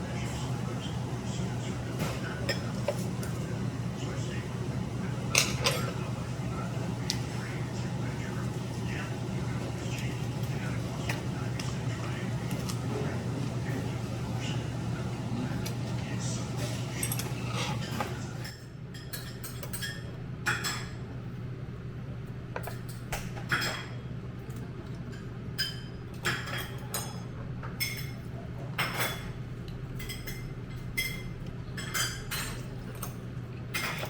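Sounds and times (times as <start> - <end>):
steady low hum: 0.0 - 18.6
cutlery clinking against dishes: 1.6 - 3.6, 5.2 - 9.1, 15.5 - 21.0, 22.6 - 24.1, 25.1 - 29.4, 30.0 - 34.0.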